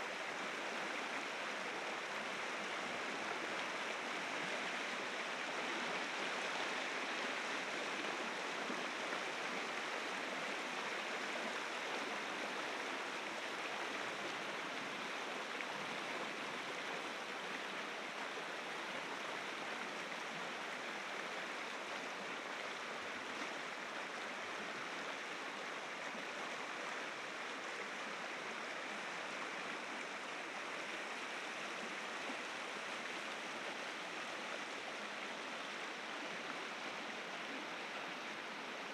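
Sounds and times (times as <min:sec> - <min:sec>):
rushing water of river rapids: 0:00.0 - 0:38.9.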